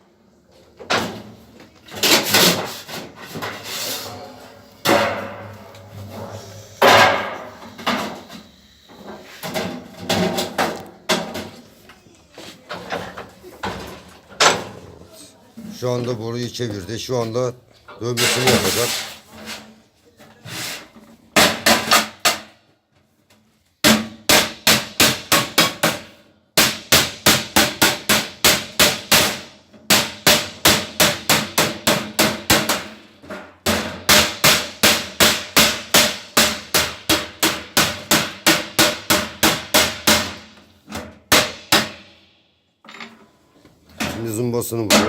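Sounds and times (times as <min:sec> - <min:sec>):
hammer striking sheet metal: 0:04.8 - 0:08.4, 0:23.8 - 0:42.3.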